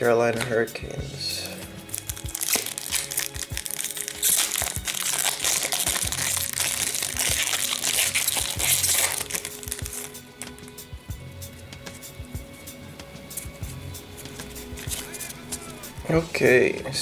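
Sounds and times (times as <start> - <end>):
background music: 0.0 - 17.0
wrapper crinkling: 1.4 - 10.9, 13.4 - 16.1.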